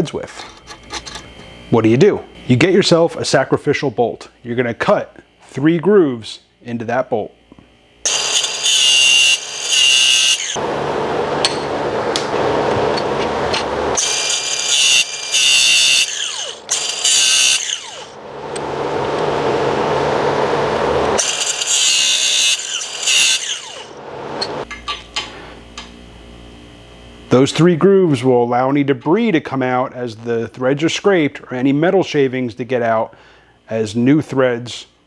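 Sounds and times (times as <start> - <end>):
power tool cutting steel bolt: 8.1 - 24.6.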